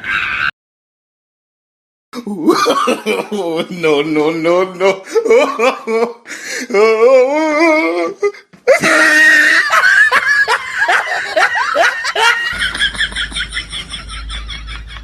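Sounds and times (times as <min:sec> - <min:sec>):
loud laughter: 0:02.3 - 0:03.9, 0:08.7 - 0:15.0.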